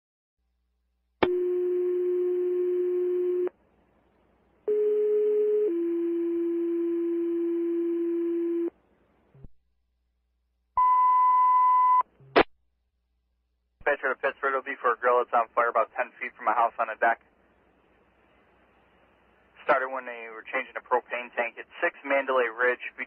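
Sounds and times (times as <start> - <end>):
higher beep: 10.8 - 12.0.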